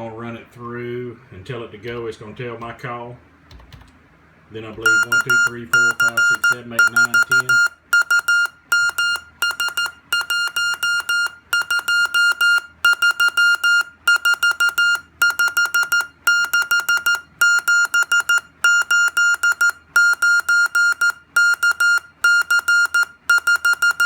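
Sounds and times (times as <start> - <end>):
morse code beeps from speaker: 4.8 - 24.0.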